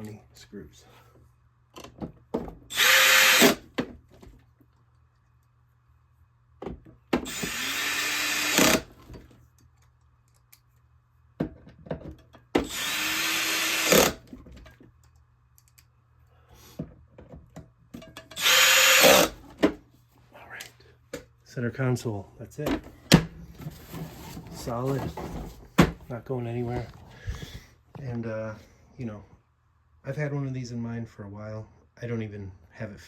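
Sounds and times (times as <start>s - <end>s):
power drill driving screws: 2.7s - 3.7s, 7.2s - 8.9s, 12.6s - 14.2s, 18.4s - 19.4s.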